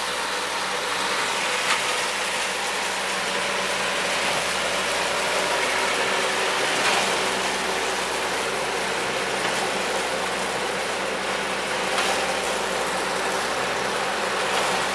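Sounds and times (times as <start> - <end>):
engine humming steadily: 0.0 - 14.9.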